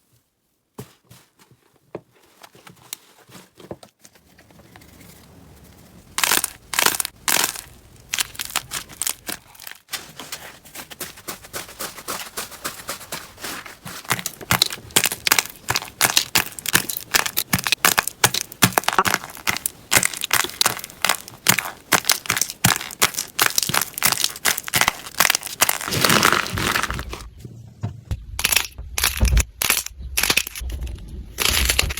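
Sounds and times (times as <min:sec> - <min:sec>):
slime crackling and popping: 0:06.2 - 0:09.8, 0:14.1 - 0:27.2.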